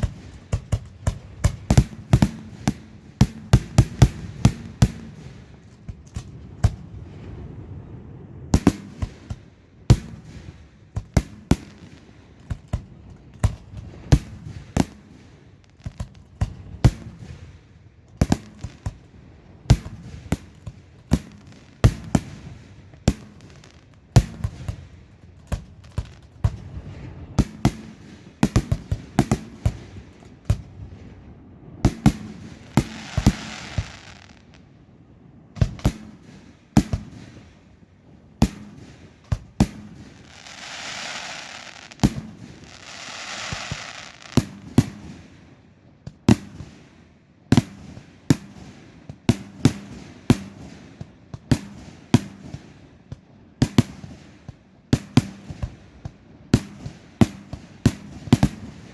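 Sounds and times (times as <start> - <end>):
firework shells banging: 0.0 - 6.9, 27.4 - 30.7, 31.8 - 34.6, 35.6 - 37.5, 38.4 - 45.2
hissing crackle of fireworks: 0.0 - 34.8, 35.5 - 37.8, 38.4 - 45.5, 53.6 - 58.9.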